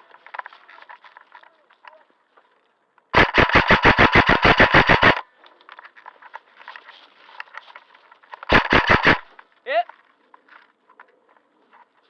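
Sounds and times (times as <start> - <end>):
airsoft gun full-auto burst: 3.1 - 5.2, 8.5 - 9.3
distant gunfire pops and clicks: 3.1 - 5.3, 8.3 - 9.4.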